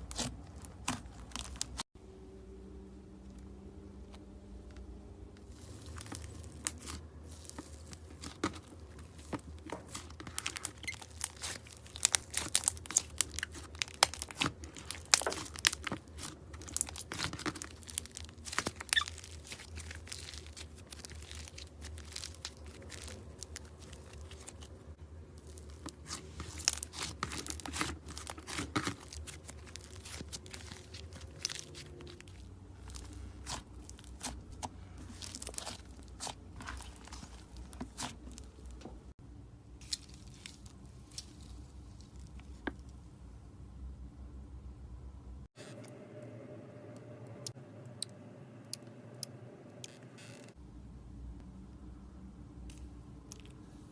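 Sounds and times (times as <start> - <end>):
slime crackling and popping: 0.0 - 1.8, 5.5 - 24.8, 25.4 - 38.9
steady low hum: 2.0 - 53.9.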